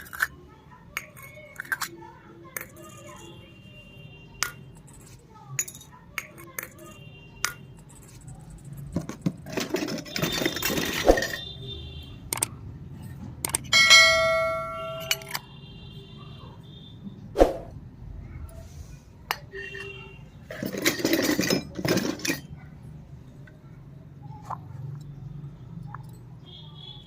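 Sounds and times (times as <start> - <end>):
toy pieces clicking and tapping: 0.0 - 0.4, 1.0 - 3.3, 4.4 - 11.0, 12.3 - 13.7
small metal piece ringing: 13.7 - 15.4.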